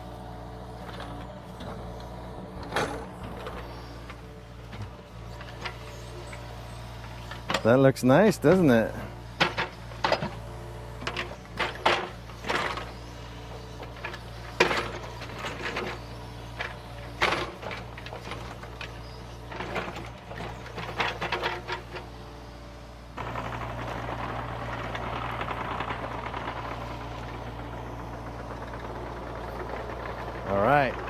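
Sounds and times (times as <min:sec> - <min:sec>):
excavator engine humming: 0:00.0 - 0:31.0.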